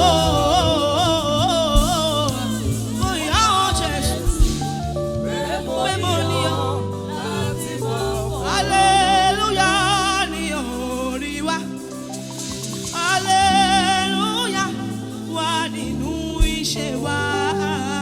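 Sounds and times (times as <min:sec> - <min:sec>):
sharp drum beats: 0:00.0 - 0:05.0
keyboard and bass chords: 0:00.0 - 0:18.0
person singing long wavering notes: 0:00.0 - 0:18.0.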